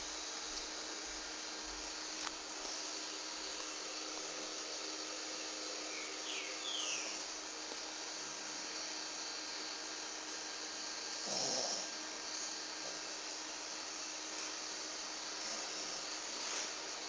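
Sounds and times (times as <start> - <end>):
steady whooshing hiss: 0.0 - 17.0
person snoring: 11.2 - 11.9.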